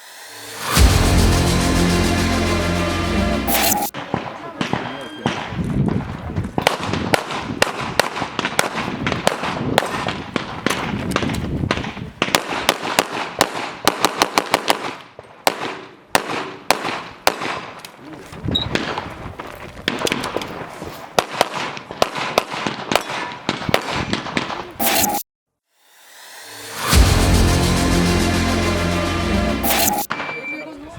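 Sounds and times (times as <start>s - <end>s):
rapid handgun shots: 3.5s - 5.6s, 6.6s - 11.0s, 11.7s - 17.8s, 21.2s - 25.2s.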